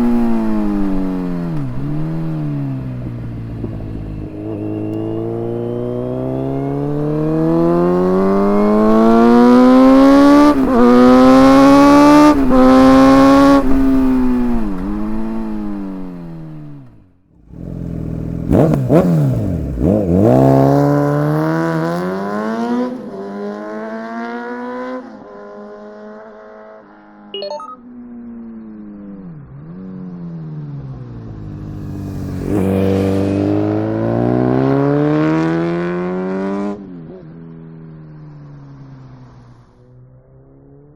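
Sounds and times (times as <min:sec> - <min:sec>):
loud motorcycle engine revving: 0:00.0 - 0:16.8, 0:17.4 - 0:25.0, 0:31.4 - 0:36.9.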